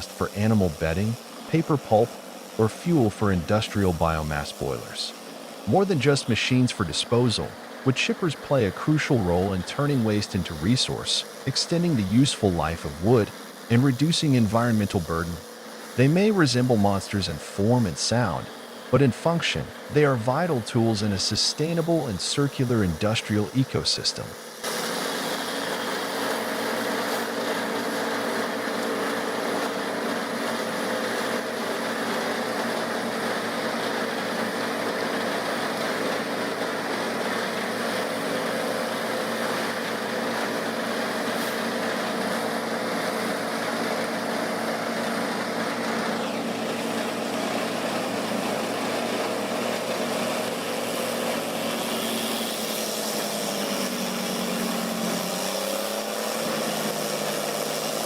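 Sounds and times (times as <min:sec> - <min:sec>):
harsh mechanical hiss: 0:00.0 - 0:58.0
machine engine running under load: 0:24.6 - 0:58.0.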